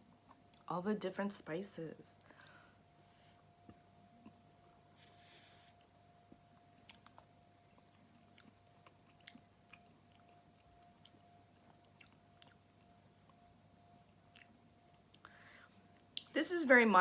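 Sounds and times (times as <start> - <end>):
faint steady hum: 0.0 - 17.0
chewing mouth clicks: 6.6 - 13.4, 14.3 - 15.3.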